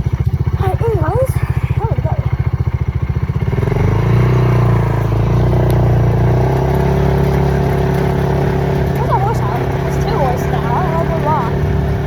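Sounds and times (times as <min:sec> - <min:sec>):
vehicle engine revving up: 0:03.2 - 0:12.0.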